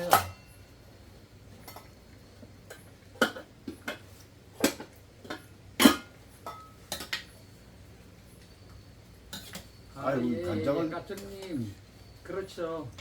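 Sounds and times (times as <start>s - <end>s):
utensils clinking against dishes: 0.0s - 0.8s, 2.6s - 7.6s, 9.2s - 11.7s.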